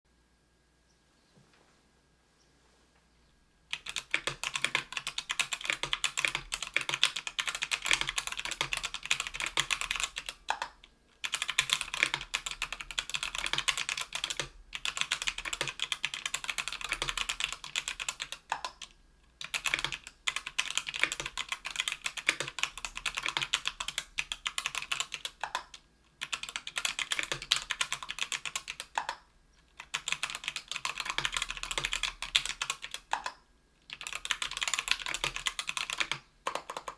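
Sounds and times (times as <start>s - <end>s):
mechanical keyboard typing: 3.7s - 36.9s.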